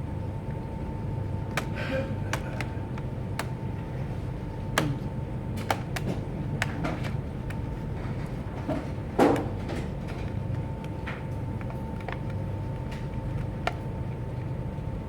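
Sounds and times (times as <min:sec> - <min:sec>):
steady low hum: 0:00.0 - 0:15.0
plastic laptop parts clicking: 0:01.5 - 0:03.7, 0:09.3 - 0:13.9.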